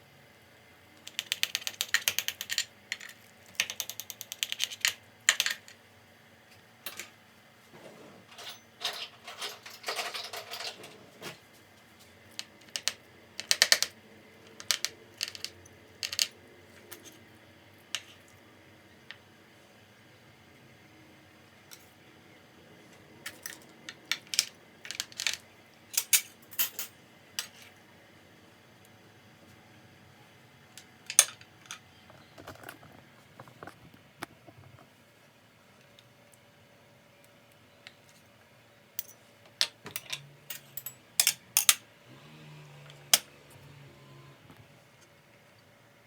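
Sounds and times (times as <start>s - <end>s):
kitchenware clinking: 8.2s - 11.3s, 39.0s - 41.8s.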